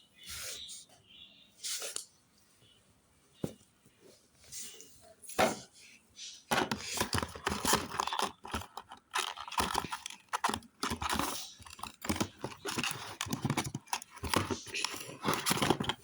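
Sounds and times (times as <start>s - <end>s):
packaging crinkling and tearing: 6.8s - 16.0s.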